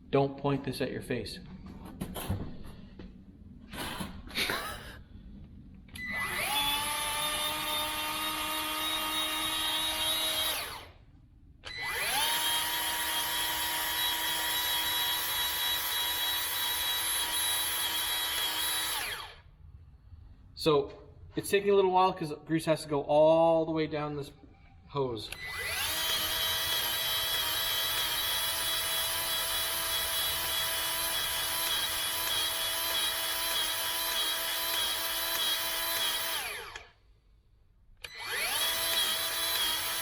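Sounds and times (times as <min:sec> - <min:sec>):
grease gun motor whining: 0:05.9 - 0:11.0, 0:11.6 - 0:19.5, 0:25.3 - 0:37.0, 0:38.0 - 0:40.0.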